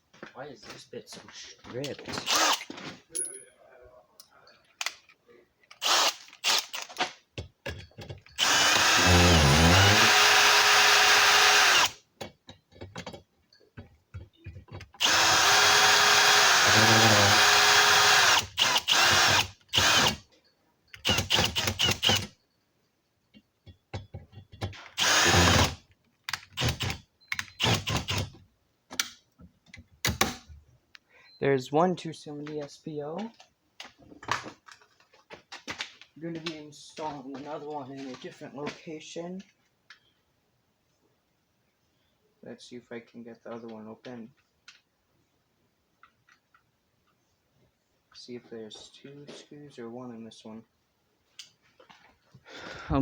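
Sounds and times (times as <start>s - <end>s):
power drill whirring: 2.2s - 2.7s, 5.8s - 6.9s, 8.3s - 12.0s, 15.0s - 20.2s, 21.0s - 22.3s, 24.9s - 25.8s, 26.4s - 28.4s
drill trigger clicks: 5.8s - 6.9s, 8.3s - 12.0s, 15.0s - 20.2s, 20.9s - 22.3s, 25.0s - 28.3s.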